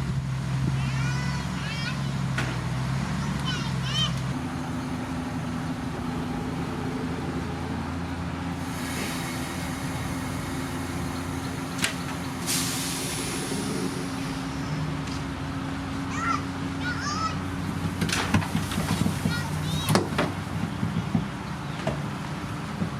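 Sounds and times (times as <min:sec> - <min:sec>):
diesel machinery running: 0:00.0 - 0:22.9
air hiss: 0:08.5 - 0:14.8.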